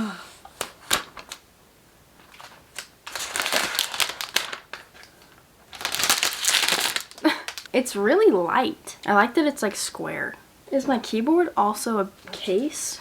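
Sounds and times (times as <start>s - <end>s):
packaging crinkling: 0.6s - 1.5s, 2.2s - 7.8s.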